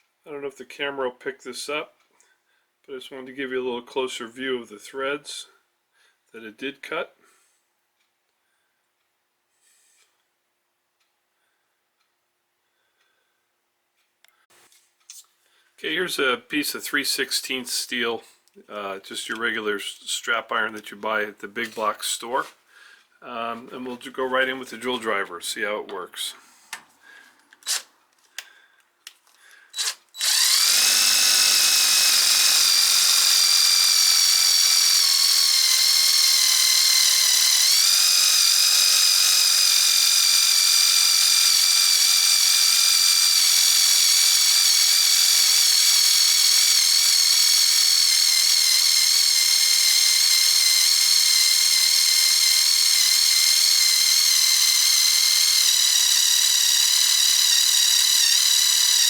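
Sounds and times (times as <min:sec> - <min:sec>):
drill clicks: 0:20.5 - 0:22.0, 0:26.7 - 0:59.0
drill motor whine: 0:29.8 - 0:59.0.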